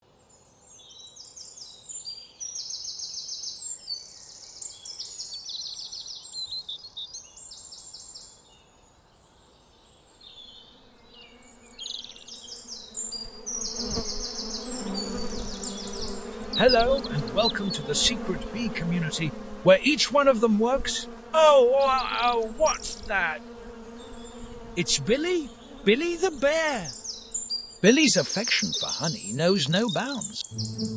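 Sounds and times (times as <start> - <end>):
bees buzzing: 10.8 - 30.9
high pulsed chirping trills: 30.2 - 30.9.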